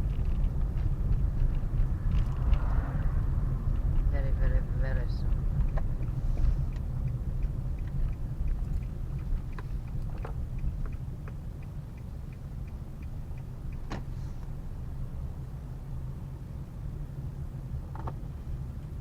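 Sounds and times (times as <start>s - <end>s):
car engine low rumble: 0.0s - 19.0s
faint regular ticking: 0.1s - 15.0s.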